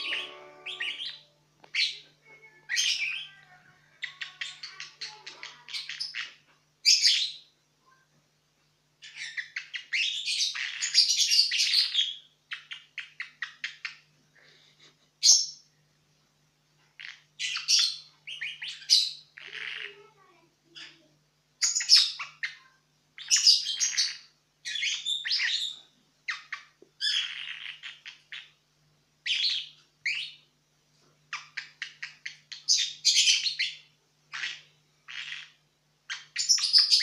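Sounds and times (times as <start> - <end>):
lovebird chirping: 0.0 - 7.5, 9.0 - 14.0, 17.0 - 20.0, 21.6 - 28.6, 29.2 - 30.5, 31.3 - 37.0.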